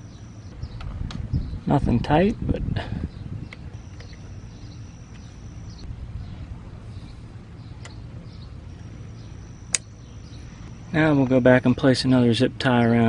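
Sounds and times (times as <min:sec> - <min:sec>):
thin high whine: 0:00.0 - 0:00.8, 0:03.7 - 0:07.4, 0:08.2 - 0:13.0
low outdoor rumble: 0:00.0 - 0:13.0.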